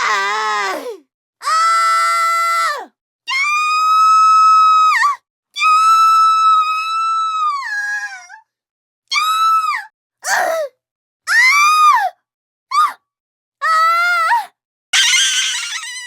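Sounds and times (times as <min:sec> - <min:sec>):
long high-pitched screams: 0:15.0 - 0:16.0.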